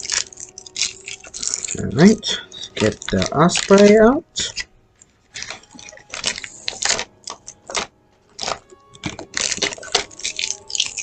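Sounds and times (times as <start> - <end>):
toy packaging crinkling: 0.0 - 11.0.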